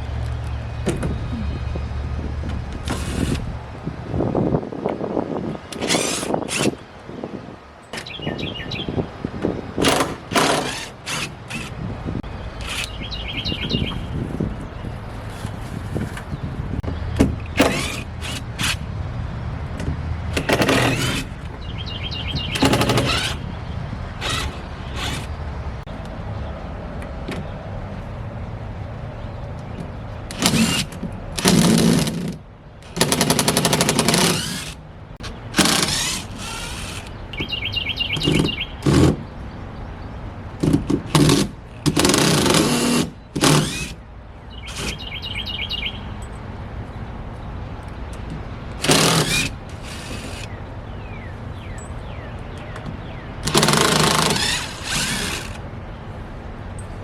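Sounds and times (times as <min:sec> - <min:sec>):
cordless power driver running: 0:53.5 - 0:55.6.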